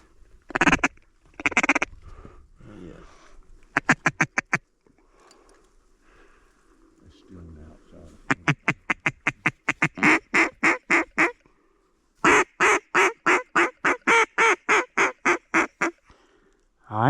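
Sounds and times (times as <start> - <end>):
duck call quacks: 0.5 - 1.9, 3.7 - 4.6, 8.3 - 11.4, 12.2 - 16.0.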